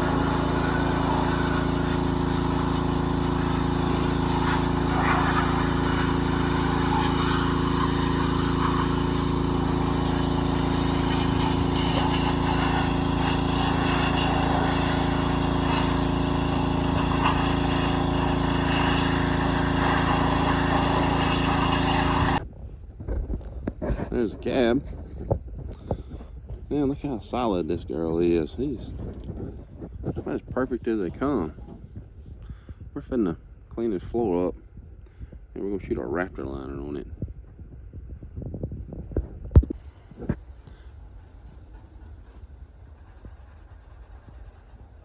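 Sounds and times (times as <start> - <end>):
small engine running: 0.0 - 22.4, 39.7 - 45.0.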